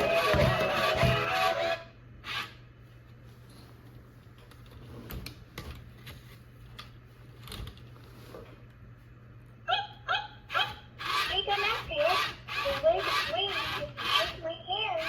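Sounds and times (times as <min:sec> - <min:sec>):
dance music from toy speaker: 0:00.0 - 0:01.8, 0:10.5 - 0:15.0
toy clicks and knocks: 0:11.0 - 0:15.0.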